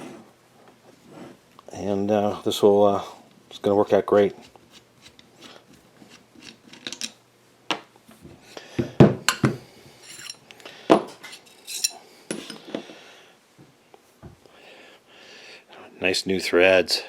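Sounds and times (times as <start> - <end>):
metal parts clinking: 10.0 - 10.4, 11.2 - 12.6.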